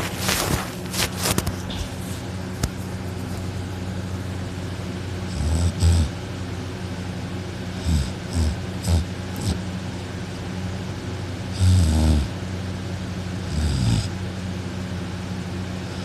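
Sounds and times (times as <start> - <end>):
steady low hum: 0.0 - 16.0
man snoring: 5.3 - 6.2, 7.7 - 9.6, 11.5 - 12.4, 13.4 - 14.2.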